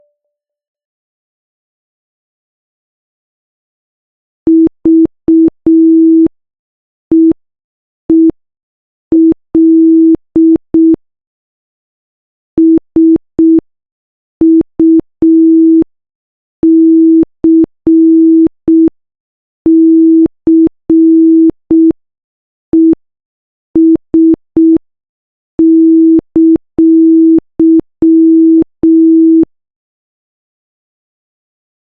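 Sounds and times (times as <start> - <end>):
morse code beeps: 19.7 - 21.9, 23.8 - 24.8, 25.6 - 29.5.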